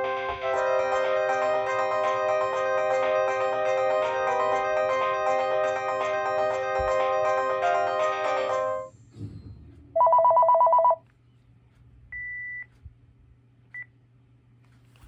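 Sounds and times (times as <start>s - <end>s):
cordless phone ringing: 0.4s - 8.9s, 10.0s - 11.0s
phone beeps: 10.0s - 11.0s.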